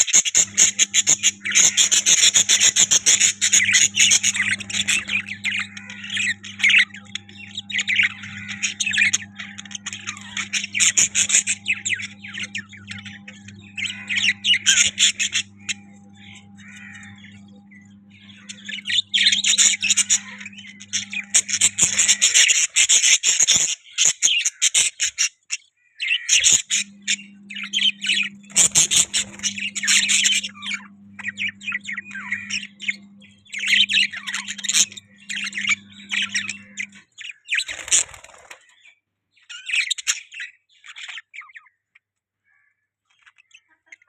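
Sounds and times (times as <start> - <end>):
budgies chirping and chattering: 0.0 - 42.0, 43.1 - 44.0
low steady hum: 0.2 - 22.9, 26.4 - 38.6.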